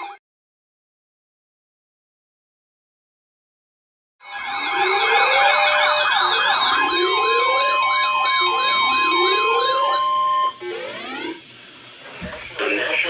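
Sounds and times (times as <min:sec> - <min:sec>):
warbling siren-like alert tones: 0:04.2 - 0:11.4
steady single-pitch alert tone: 0:04.3 - 0:11.4.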